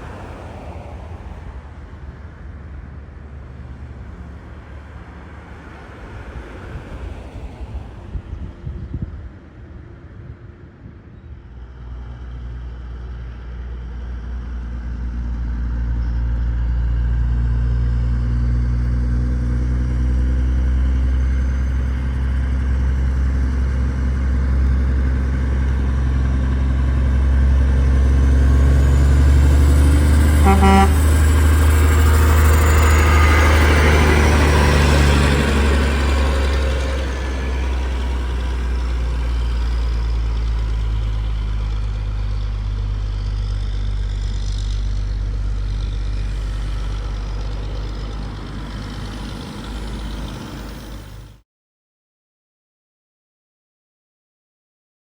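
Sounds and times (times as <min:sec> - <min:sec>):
heavy diesel engine running: 0:13.6 - 0:51.4
short horn toot: 0:30.4 - 0:31.2.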